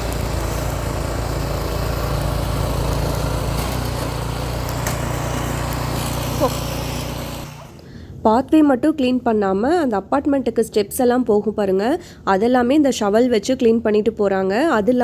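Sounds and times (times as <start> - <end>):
small engine running: 0.0 - 7.9.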